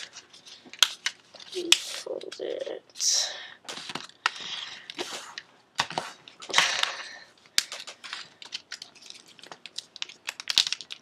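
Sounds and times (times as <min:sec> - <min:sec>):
paper being folded: 0:00.0 - 0:02.7, 0:07.6 - 0:11.0.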